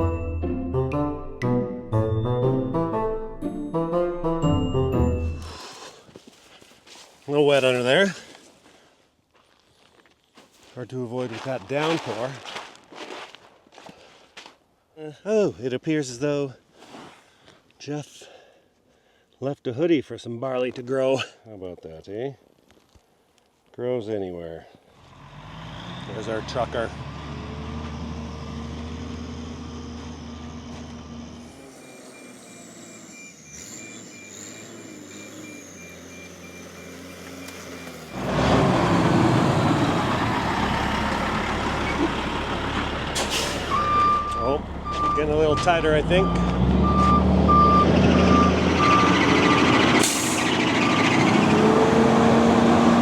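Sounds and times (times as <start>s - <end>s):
truck engine running: 26.3s - 53.0s
reversing alarm beeping: 31.4s - 38.3s, 43.7s - 49.8s
air brakes hissing: 43.1s - 44.1s, 50.0s - 50.6s.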